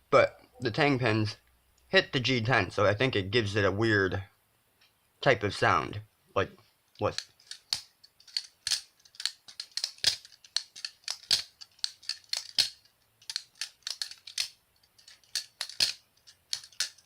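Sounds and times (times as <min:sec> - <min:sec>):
butterfly knife clicking: 0:07.2 - 0:17.0.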